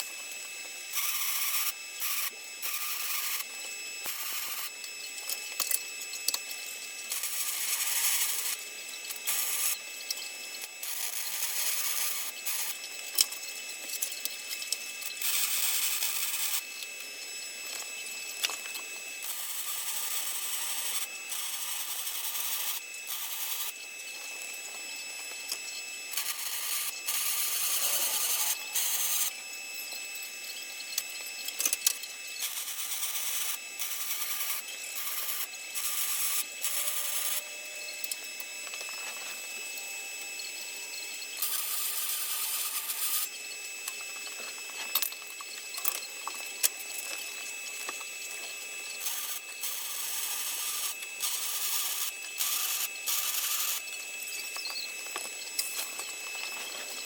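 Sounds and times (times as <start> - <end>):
electric arc welding crackle: 7.1 - 16.7, 18.4 - 23.8, 26.1 - 29.3, 32.4 - 37.5, 41.4 - 43.3, 49.0 - 53.8.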